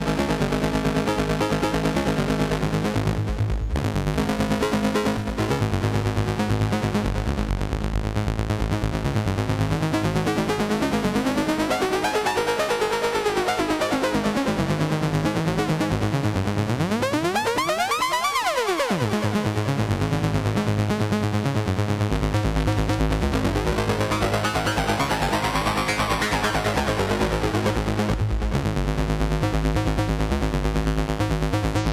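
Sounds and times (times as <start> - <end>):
fast repeating synth pattern: 23.2 - 28.3.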